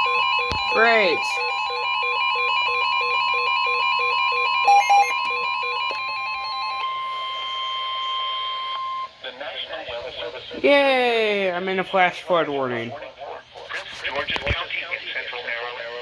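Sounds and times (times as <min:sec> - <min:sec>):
steady high alarm tone: 0:00.0 - 0:09.2
short loud beeps: 0:04.6 - 0:05.3
electronic alert beeps: 0:04.6 - 0:06.1.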